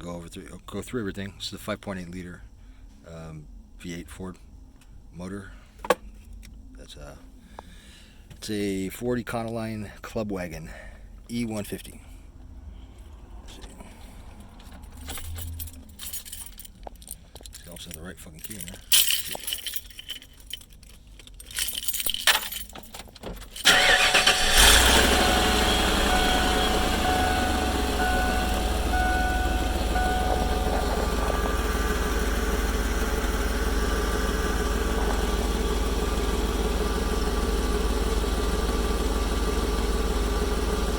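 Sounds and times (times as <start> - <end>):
keys jingling: 14.5 - 24.0, 26.1 - 35.3
engine starting and idling: 23.6 - 40.9
pulsing high tone: 23.8 - 38.6.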